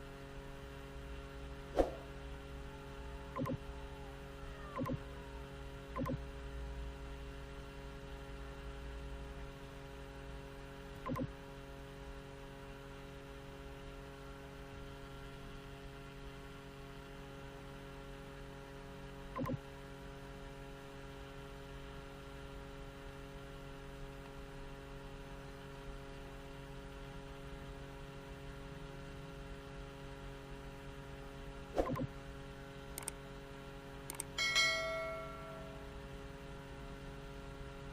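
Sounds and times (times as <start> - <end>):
steady electrical hum: 0.0 - 37.9
single clicks: 33.0 - 33.2, 34.1 - 34.4
short bright chime: 34.4 - 35.8.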